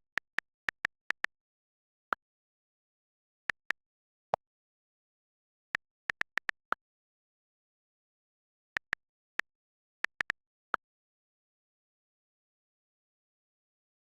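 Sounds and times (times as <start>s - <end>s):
phone keyboard clicks: 0.0s - 1.3s, 5.8s - 6.7s, 8.8s - 10.4s.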